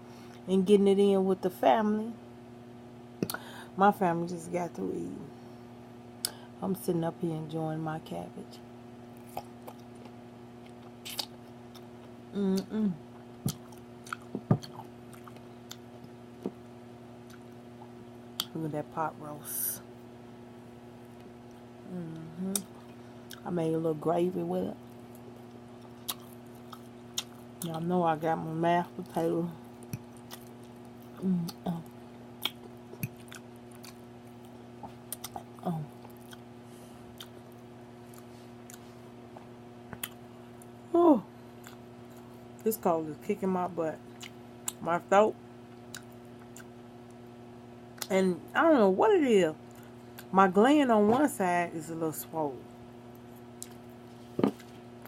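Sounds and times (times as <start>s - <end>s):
steady low hum: 0.0s - 55.0s
person chewing food: 9.2s - 12.2s, 13.1s - 16.5s, 17.2s - 18.5s, 24.9s - 27.7s, 29.7s - 36.5s, 37.1s - 40.8s, 41.6s - 42.3s, 44.1s - 44.8s, 45.7s - 47.2s, 53.1s - 54.8s
hummed murmurs: 12.3s - 13.0s, 31.2s - 31.9s
short voice hum: 12.3s - 13.0s.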